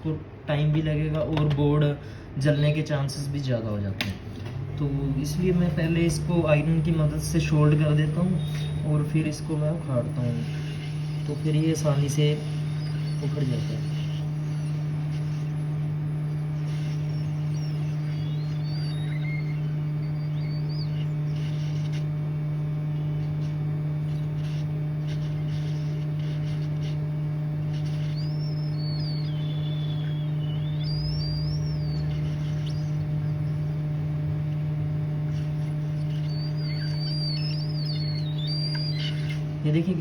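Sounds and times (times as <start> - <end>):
low electrical hum: 0.0 - 40.0
high chirping bird calls: 5.2 - 15.7, 16.3 - 22.1, 27.7 - 33.8, 35.3 - 39.4.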